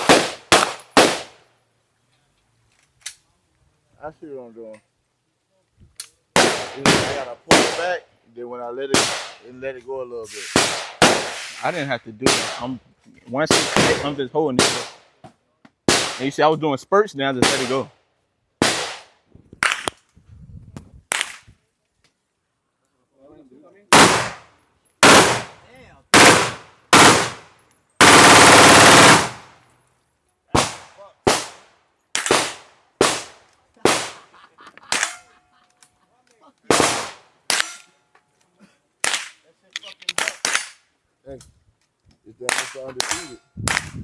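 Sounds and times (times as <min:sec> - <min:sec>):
gunshots: 0:00.0 - 0:01.4, 0:06.4 - 0:08.0, 0:08.9 - 0:09.4, 0:10.5 - 0:12.7, 0:13.5 - 0:15.1, 0:15.9 - 0:16.4, 0:17.4 - 0:17.9, 0:18.6 - 0:19.9, 0:23.9 - 0:29.5, 0:30.6 - 0:34.3, 0:36.7 - 0:37.8, 0:42.5 - 0:44.0.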